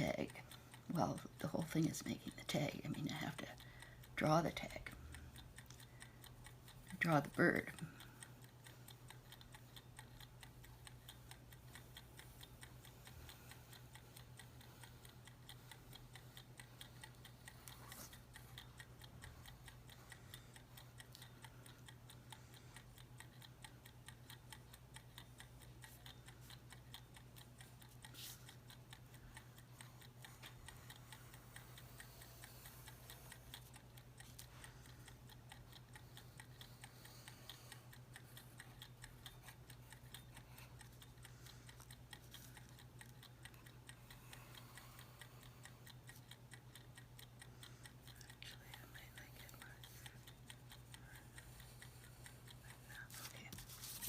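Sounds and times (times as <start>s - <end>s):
mechanical timer ticking: 0.0s - 54.0s.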